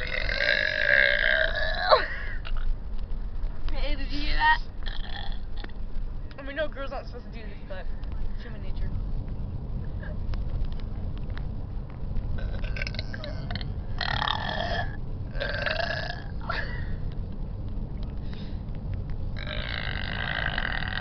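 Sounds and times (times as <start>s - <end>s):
girl burping loudly: 0.0s - 2.6s, 4.3s - 5.7s, 12.4s - 16.8s, 19.4s - 21.0s
car cabin low rumble: 0.0s - 21.0s.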